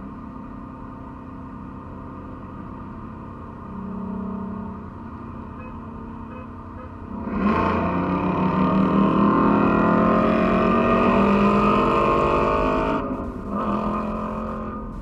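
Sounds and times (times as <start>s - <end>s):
car engine revving hard: 7.1s - 15.0s.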